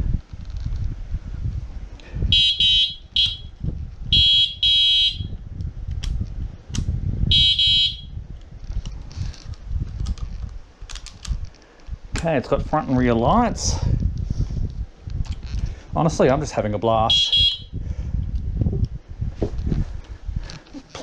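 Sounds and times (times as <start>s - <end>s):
electric scooter horn beeping: 2.3s - 5.4s, 7.3s - 8.2s, 17.1s - 17.8s.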